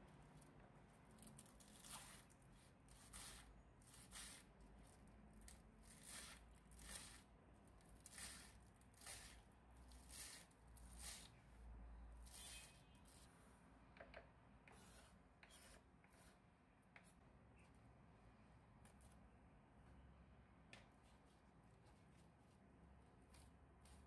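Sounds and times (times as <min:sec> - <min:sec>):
squishing and scraping food strokes: 0:01.1 - 0:11.5, 0:12.2 - 0:13.5.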